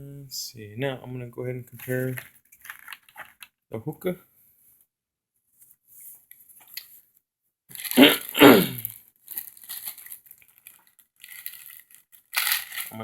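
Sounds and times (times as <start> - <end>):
toy pieces crinkling: 1.8 - 3.5, 7.7 - 13.0.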